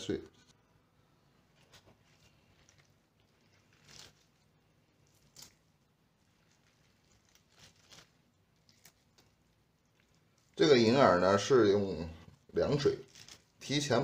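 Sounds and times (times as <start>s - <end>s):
soft tearing and squishing: 0.1s - 14.0s.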